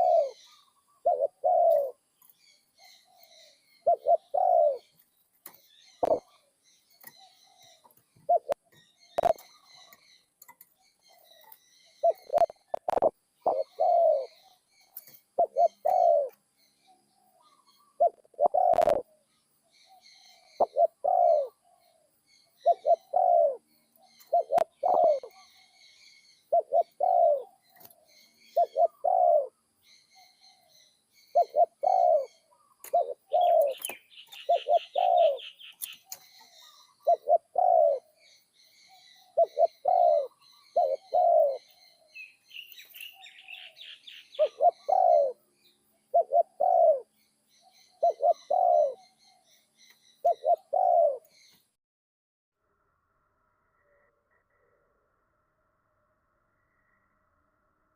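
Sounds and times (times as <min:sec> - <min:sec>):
dove cooing: 0:00.0 - 0:02.0, 0:02.8 - 0:05.0, 0:05.9 - 0:10.0, 0:11.1 - 0:16.4, 0:17.3 - 0:30.7, 0:31.3 - 0:45.5, 0:46.1 - 0:49.5, 0:50.2 - 0:51.3
bird trill: 0:00.0 - 0:51.7
small birds chirping: 0:00.0 - 0:51.8.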